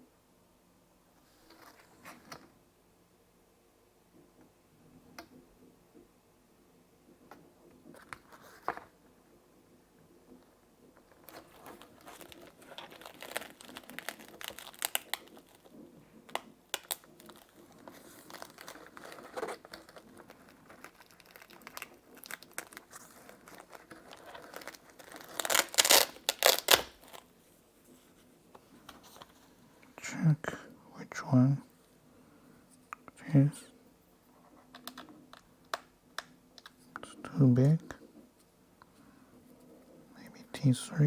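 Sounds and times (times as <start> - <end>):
rustling: 10.3 - 29.7
plastic crinkling: 11.0 - 29.5.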